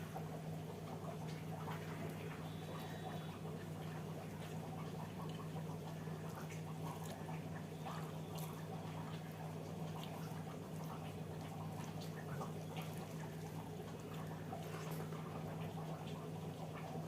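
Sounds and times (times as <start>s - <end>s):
steady low hum: 0.0s - 17.0s
wet chewing and lip-smacking: 4.3s - 13.2s.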